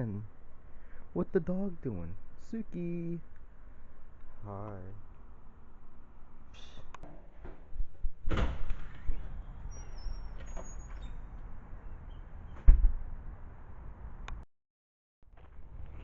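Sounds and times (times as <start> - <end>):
sharp door thump: 8.2 - 8.9, 12.6 - 13.0.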